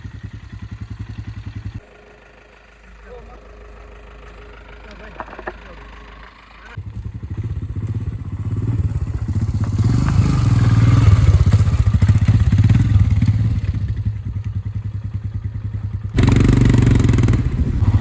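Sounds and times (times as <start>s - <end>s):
motorcycle engine running: 0.0s - 18.0s
rush of noise: 16.2s - 18.0s.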